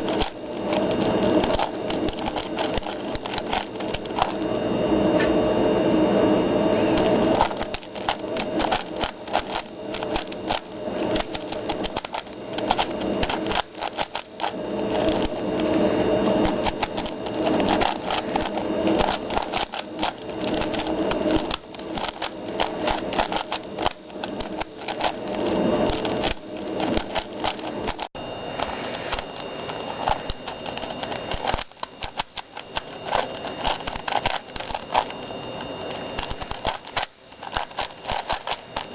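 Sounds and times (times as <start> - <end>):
plastic puzzle cube clicking: 1.4 - 4.4, 7.3 - 15.4, 16.5 - 25.2, 29.1 - 35.1, 36.2 - 38.9.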